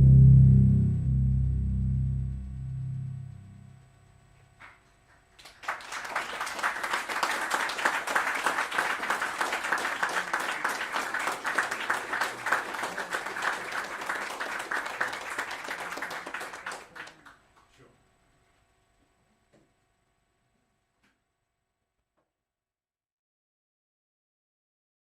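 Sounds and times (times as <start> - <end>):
low synth tones: 0.0 - 4.4
audience applauding: 5.4 - 17.4.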